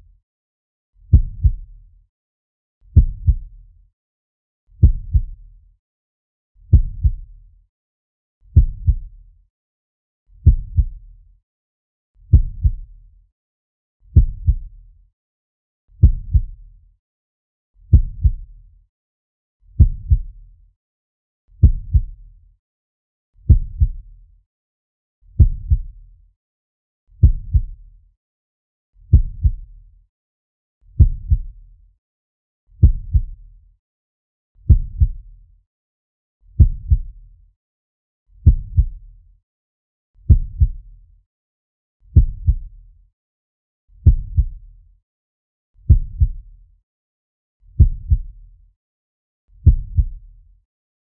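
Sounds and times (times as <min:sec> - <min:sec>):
slow heartbeat thumps: 0:01.1 - 0:01.6, 0:02.9 - 0:03.5, 0:04.8 - 0:05.4, 0:06.7 - 0:07.2, 0:08.6 - 0:09.1, 0:10.4 - 0:11.0, 0:12.3 - 0:12.8, 0:14.2 - 0:14.7, 0:16.0 - 0:16.6, 0:17.9 - 0:18.4, 0:19.8 - 0:20.3, 0:21.6 - 0:22.2, 0:23.5 - 0:24.0, 0:25.4 - 0:25.9, 0:27.2 - 0:27.8, 0:29.1 - 0:29.6, 0:31.0 - 0:31.5, 0:32.8 - 0:33.4, 0:34.7 - 0:35.2, 0:36.6 - 0:37.1, 0:38.4 - 0:39.0, 0:40.3 - 0:40.8, 0:42.2 - 0:42.7, 0:44.0 - 0:44.6, 0:45.9 - 0:46.4, 0:47.8 - 0:48.3, 0:49.6 - 0:50.2.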